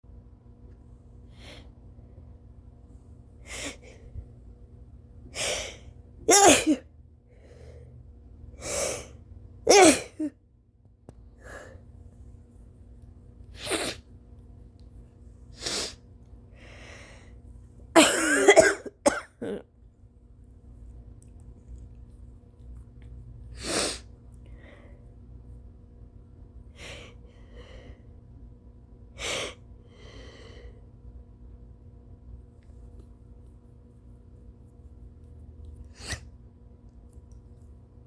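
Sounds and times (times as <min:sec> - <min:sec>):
woman coughing: 0:06.3 - 0:06.8, 0:09.7 - 0:10.4, 0:18.0 - 0:19.7
woman sneezing: 0:06.3 - 0:06.8, 0:09.7 - 0:10.3.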